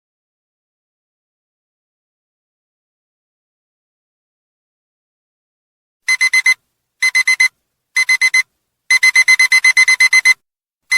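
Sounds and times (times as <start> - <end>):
timer alarm beeping: 6.1 - 10.4.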